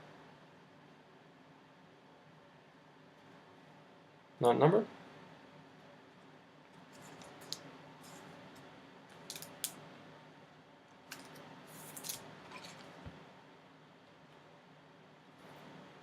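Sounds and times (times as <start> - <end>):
card rustle: 6.9 - 8.3, 11.1 - 13.0
card clicks and scrapes: 11.1 - 13.0.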